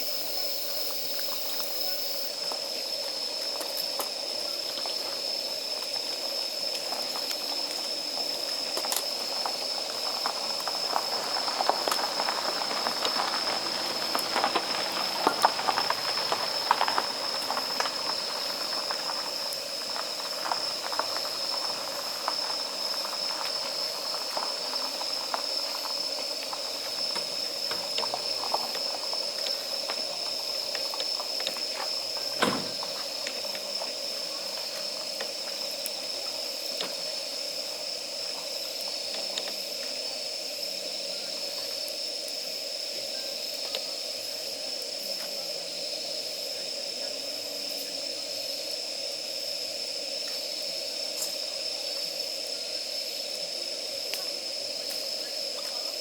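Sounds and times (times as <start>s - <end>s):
steady fire hiss: 0.0s - 56.0s
wood fire crackling and popping: 8.4s - 33.7s.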